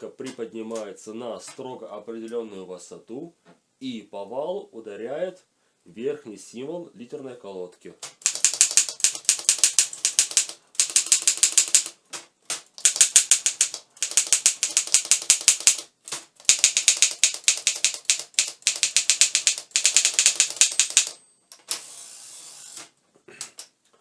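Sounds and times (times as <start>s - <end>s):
typewriter keystrokes: 8.0s - 21.8s.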